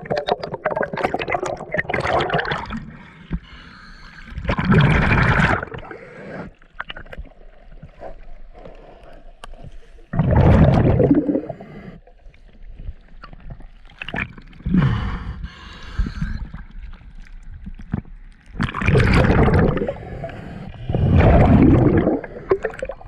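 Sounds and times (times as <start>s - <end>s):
gurgling exhaled bubbles: 0.0s - 3.1s, 4.3s - 6.1s, 10.1s - 11.8s, 13.3s - 23.0s
hissing regulator inhale: 11.4s - 12.1s, 14.7s - 16.6s, 19.8s - 21.3s.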